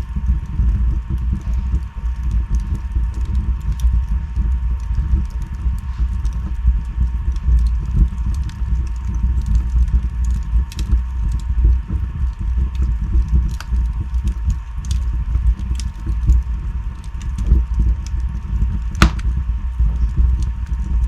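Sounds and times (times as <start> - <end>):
burning wood crackling and popping: 0.0 - 21.0
low rumble of flames: 0.0 - 21.0.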